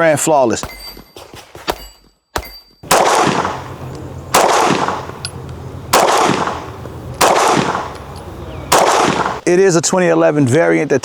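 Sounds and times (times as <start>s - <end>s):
pistol shots with echoing tail: 2.8s - 9.4s.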